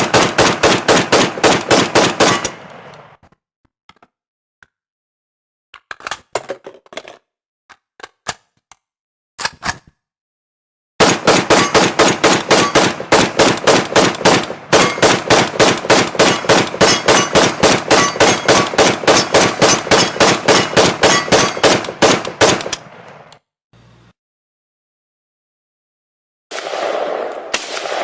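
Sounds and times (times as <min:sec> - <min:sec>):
rapid gunfire: 0:00.0 - 0:02.8, 0:11.0 - 0:23.0, 0:26.5 - 0:28.0.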